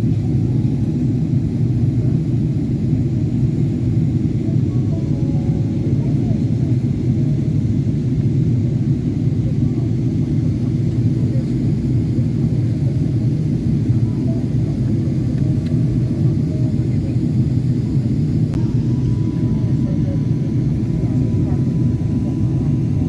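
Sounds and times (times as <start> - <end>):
airplane cabin drone: 0.0 - 23.0.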